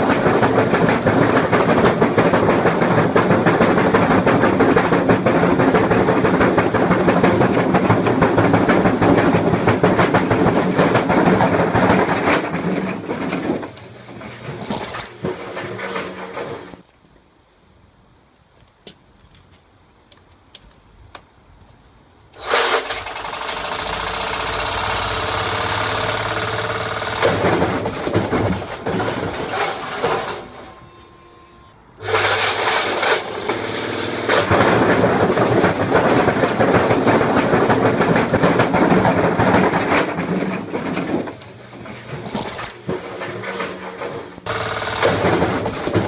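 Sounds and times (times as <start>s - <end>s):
washing machine rattling: 0.0s - 16.8s, 22.4s - 30.4s, 32.0s - 46.0s
motor hum: 22.4s - 35.9s, 40.9s - 46.0s.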